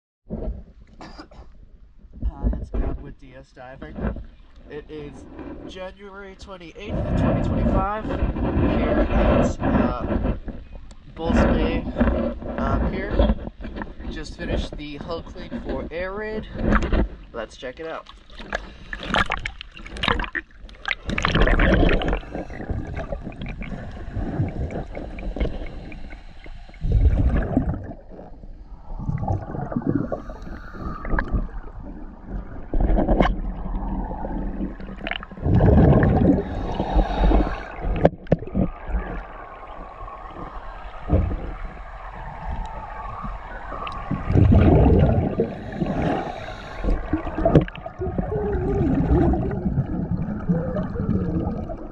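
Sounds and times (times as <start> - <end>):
underwater gurgling: 2.2 - 51.9
diver exhaling bubbles: 18.4 - 51.9.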